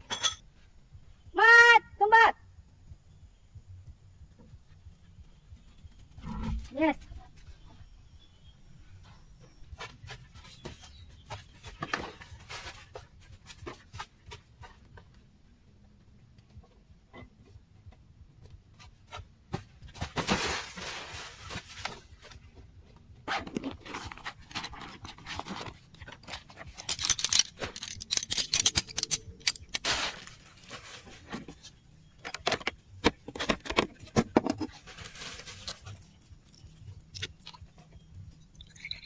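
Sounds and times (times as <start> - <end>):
objects rustling scraping and clinking: 0.0 - 0.5, 9.8 - 14.9, 19.1 - 22.6, 23.2 - 39.0.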